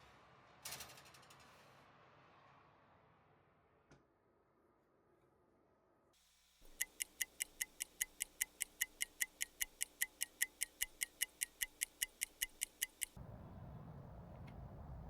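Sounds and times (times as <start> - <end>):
timer ticking rapidly: 6.7 - 13.2.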